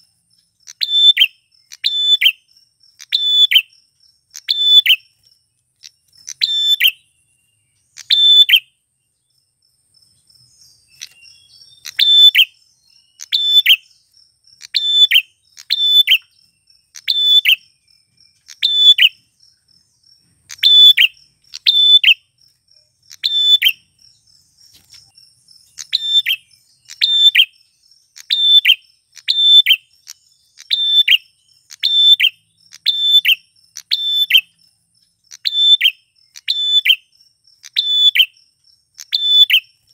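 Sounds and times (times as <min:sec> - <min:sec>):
high insect trill: 0:00.0 - 0:39.9.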